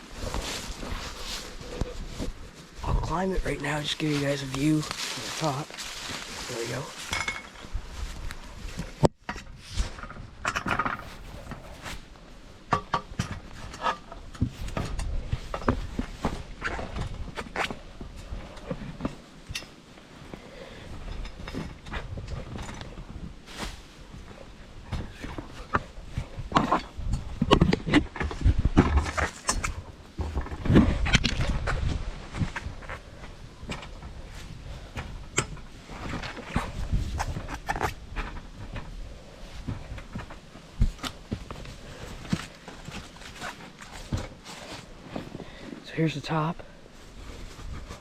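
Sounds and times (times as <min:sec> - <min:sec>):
clothing rustle: 0:00.0 - 0:09.0, 0:10.7 - 0:12.5, 0:14.3 - 0:26.4, 0:28.9 - 0:45.9, 0:46.6 - 0:48.0
microphone handling rumble: 0:00.0 - 0:12.4, 0:13.4 - 0:18.9, 0:20.9 - 0:45.6
knocks and scrapes on ladder: 0:04.2 - 0:17.8, 0:21.1 - 0:45.6
scraping: 0:09.6 - 0:12.2.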